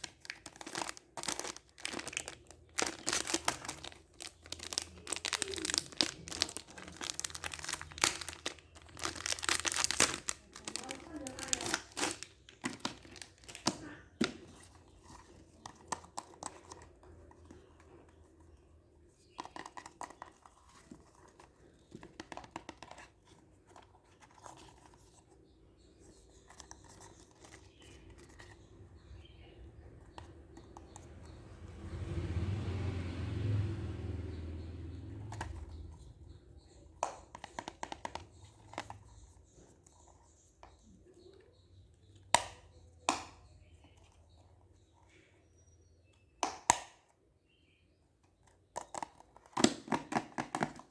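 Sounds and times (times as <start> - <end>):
packaging crinkling and tearing: 0.0 - 13.9.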